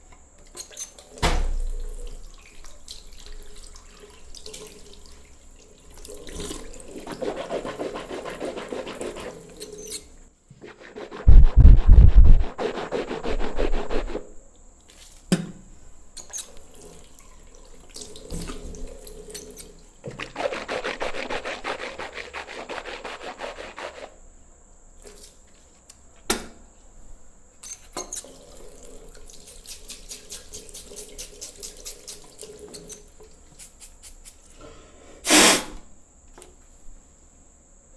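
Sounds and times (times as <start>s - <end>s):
bristle brush scrubbing: 6.4s - 15.2s, 20.2s - 24.2s, 29.4s - 32.9s.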